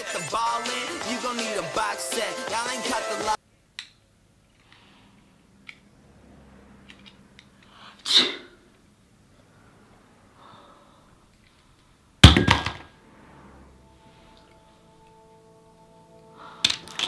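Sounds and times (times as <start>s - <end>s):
person sneezing: 7.9s - 8.6s
loud thud: 12.2s - 12.9s.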